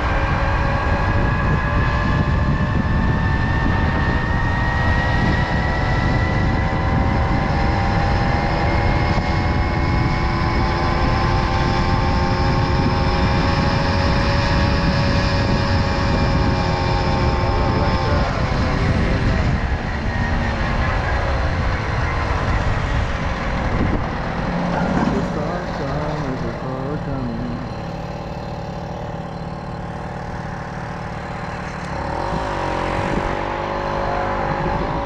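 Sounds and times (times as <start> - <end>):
wind rumble on microphone: 0.0 - 35.0
moped engine running: 5.2 - 35.0.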